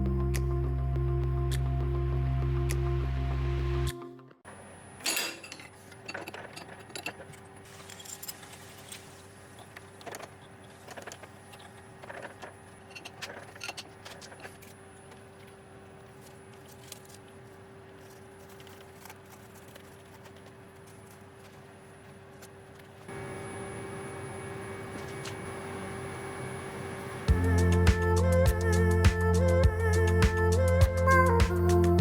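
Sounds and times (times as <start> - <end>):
small metallic clinks: 5.0 - 8.4.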